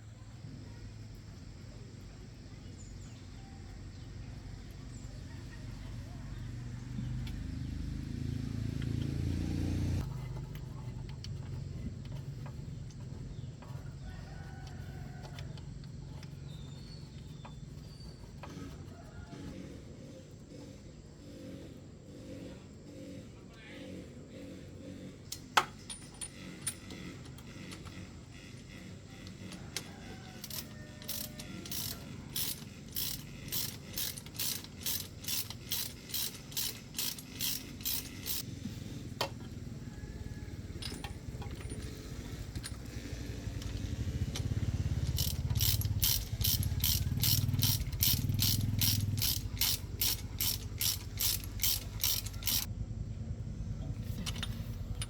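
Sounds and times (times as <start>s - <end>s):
ratchet wrench clicking: 25.3s - 38.4s, 40.7s - 52.7s, 54.1s - 55.0s.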